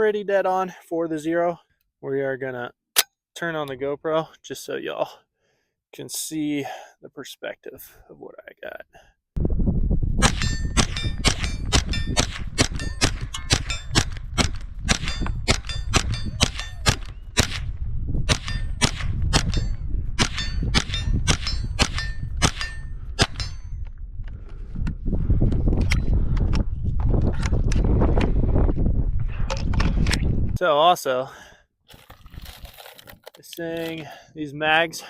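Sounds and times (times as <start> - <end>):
steady low rumble: 9.4 - 30.6
rifle shots: 10.2 - 17.7, 18.3 - 19.6, 20.2 - 23.5.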